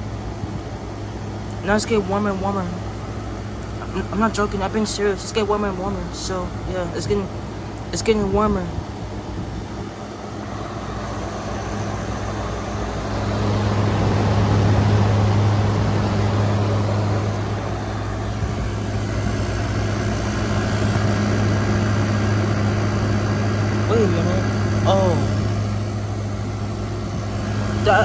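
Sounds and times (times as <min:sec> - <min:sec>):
air conditioner compressor hum: 0:00.0 - 0:28.0
whooshing fan: 0:00.0 - 0:28.0.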